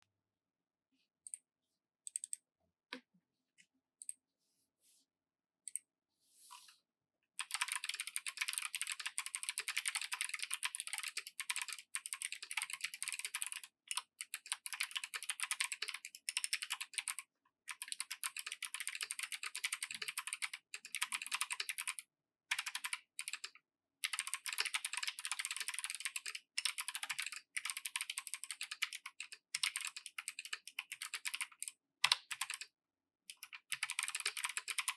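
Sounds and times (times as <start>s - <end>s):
clicky mechanical keyboard typing: 7.4s - 32.6s, 33.3s - 34.9s.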